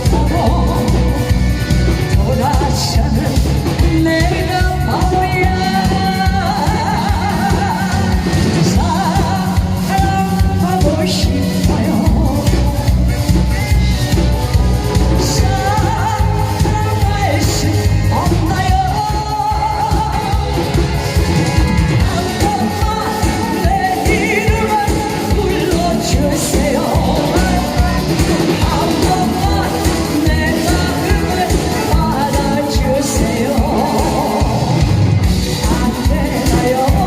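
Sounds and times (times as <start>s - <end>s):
backing track with drum beat: 0.0s - 37.0s
person singing into microphone: 0.0s - 37.0s.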